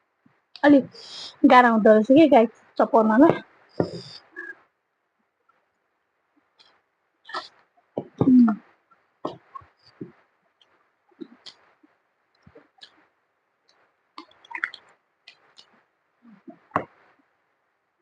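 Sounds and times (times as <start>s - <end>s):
wet chewing smacks and sucks: 14.2s - 15.7s.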